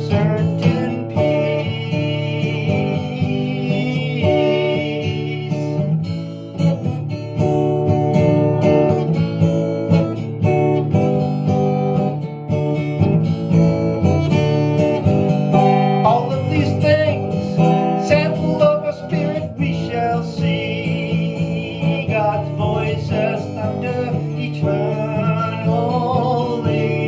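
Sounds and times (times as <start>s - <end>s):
acoustic guitar picked and strummed: 0.0s - 27.0s.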